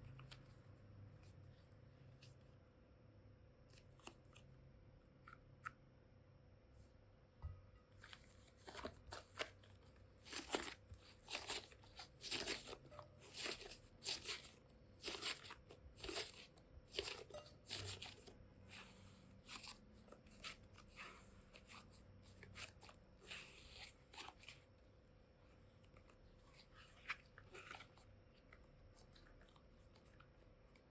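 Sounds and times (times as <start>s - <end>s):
crunches and crackles of material: 8.0s - 30.9s.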